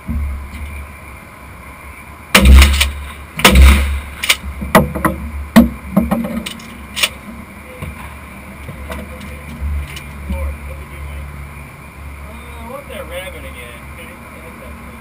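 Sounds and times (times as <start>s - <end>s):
shotgun shot: 2.4s - 4.4s.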